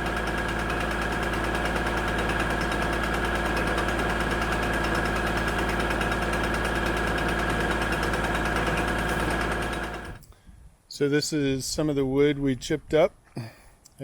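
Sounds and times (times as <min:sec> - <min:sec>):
wood chipper high whine: 0:00.0 - 0:10.2
tractor diesel engine running: 0:00.0 - 0:10.3.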